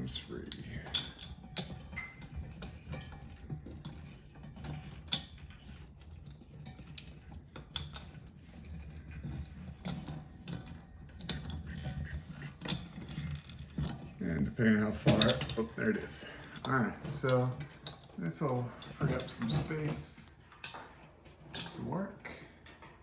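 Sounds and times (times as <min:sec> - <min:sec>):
light fixture metallic clicks and rattles: 0:00.0 - 0:23.0.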